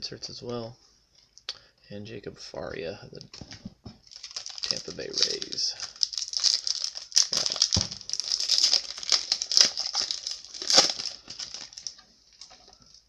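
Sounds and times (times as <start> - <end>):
foil wrapper crinkling: 3.3 - 13.0.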